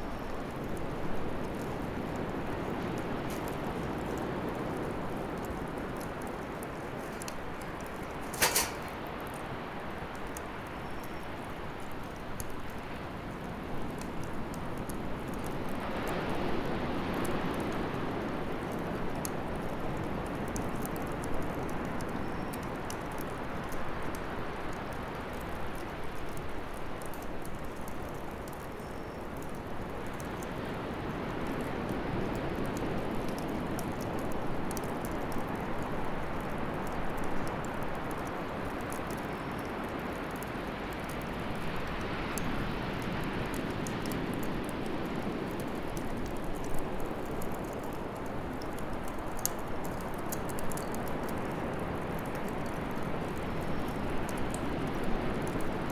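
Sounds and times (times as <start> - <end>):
fire crackling and popping: 0.1 - 16.1, 29.4 - 55.9
bonfire flames rushing: 5.0 - 9.2.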